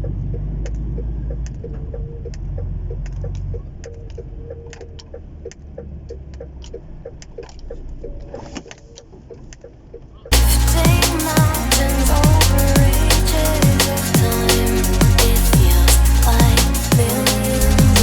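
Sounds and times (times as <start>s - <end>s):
rapid regular ticking: 10.3s - 18.0s.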